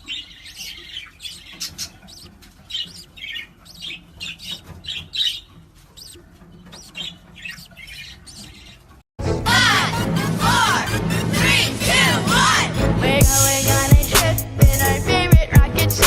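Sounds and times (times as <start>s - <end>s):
parrot chirping and squawking: 0.0s - 9.0s.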